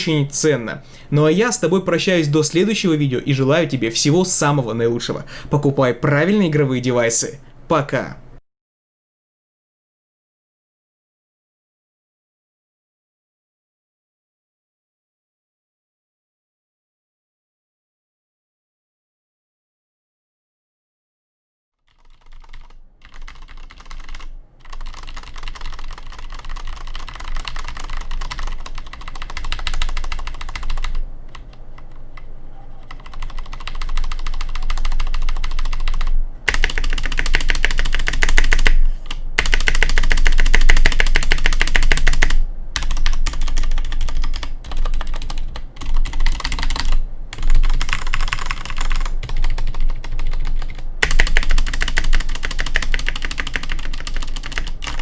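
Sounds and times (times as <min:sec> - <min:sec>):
fast mechanical keyboard typing: 0:21.9 - 0:55.0.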